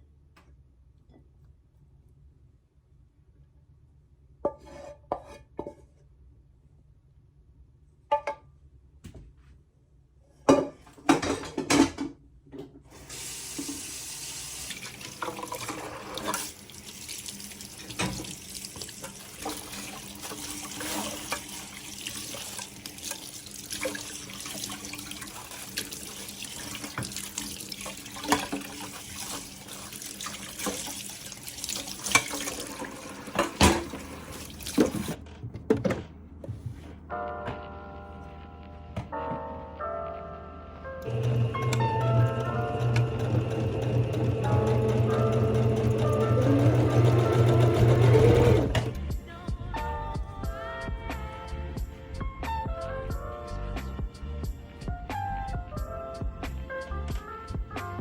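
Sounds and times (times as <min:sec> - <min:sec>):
running water: 0:13.0 - 0:35.2, 0:41.1 - 0:49.0.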